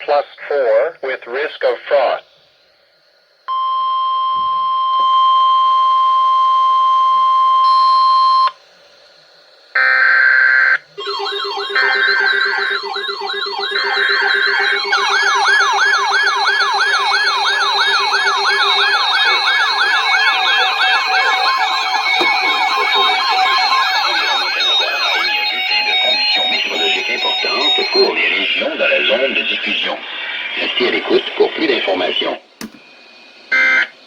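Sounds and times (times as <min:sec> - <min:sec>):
steady alarm tone: 0:02.4 - 0:08.8, 0:09.7 - 0:29.2, 0:32.6 - 0:34.0
buzzy data bursts: 0:09.7 - 0:29.5
siren wails: 0:09.8 - 0:28.2.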